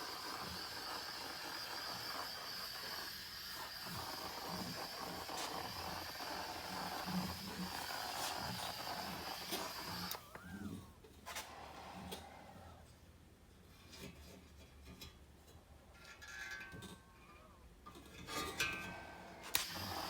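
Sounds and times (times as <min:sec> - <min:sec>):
powder coating gun hissing: 0:00.0 - 0:10.4, 0:19.5 - 0:20.0.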